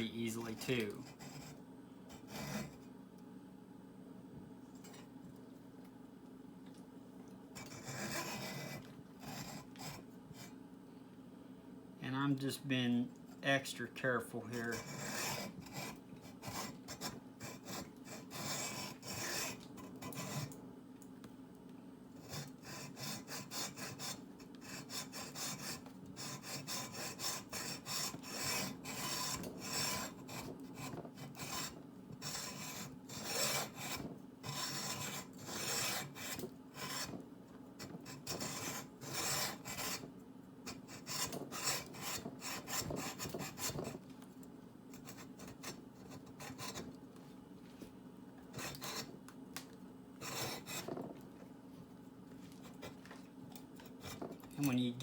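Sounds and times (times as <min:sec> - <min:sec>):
hacksaw sawing crystal: 0:00.2 - 0:02.8, 0:07.6 - 0:10.5, 0:14.5 - 0:20.6, 0:22.2 - 0:37.2, 0:37.8 - 0:40.1, 0:40.7 - 0:44.0, 0:50.2 - 0:50.9.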